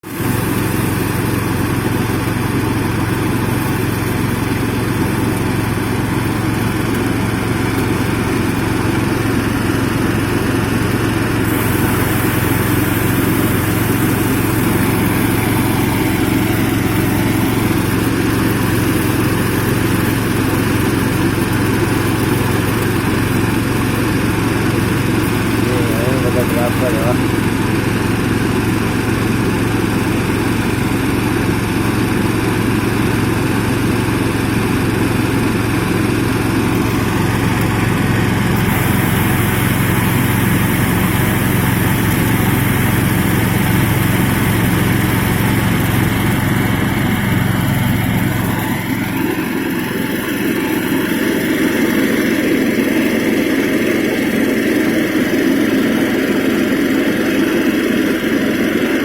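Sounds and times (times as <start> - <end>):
threshing machine engine running: 0.0 - 59.0.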